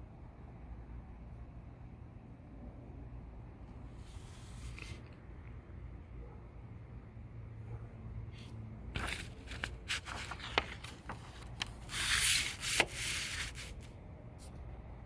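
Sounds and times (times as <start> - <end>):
paper pages rustling: 4.1 - 5.2, 8.9 - 13.9
sharp paper ticks: 9.0 - 13.9.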